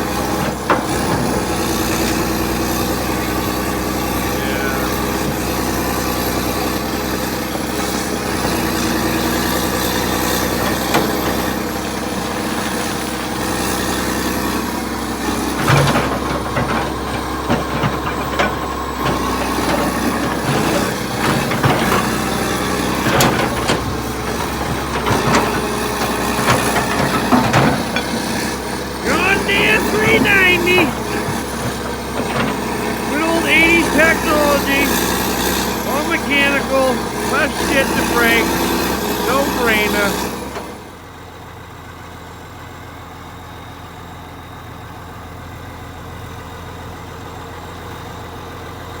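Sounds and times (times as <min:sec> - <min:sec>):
excavator diesel engine running: 0:00.0 - 0:40.4
excavator diesel engine idling: 0:21.2 - 0:40.2.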